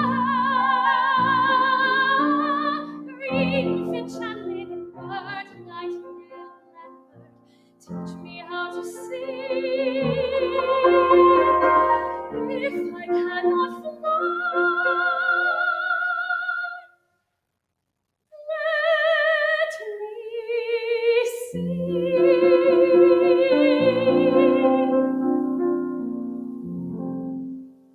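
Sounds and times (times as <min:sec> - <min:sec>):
piano accompaniment: 0:00.0 - 0:15.6, 0:21.6 - 0:27.8
soprano singing with vibrato: 0:00.0 - 0:17.0, 0:18.4 - 0:25.8.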